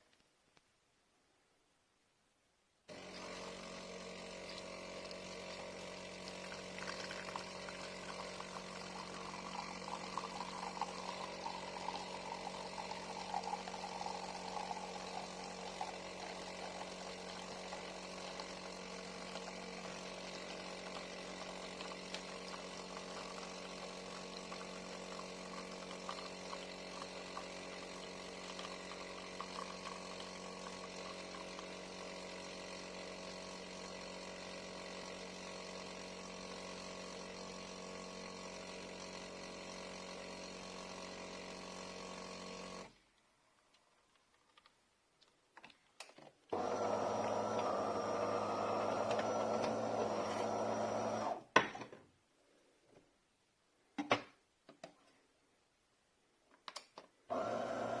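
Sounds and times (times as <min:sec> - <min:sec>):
espresso machine pump buzzing: 0:02.9 - 0:43.0, 0:46.5 - 0:51.4, 0:57.3 - 0:58.0
liquid pouring: 0:04.3 - 0:27.6, 0:28.3 - 0:31.8.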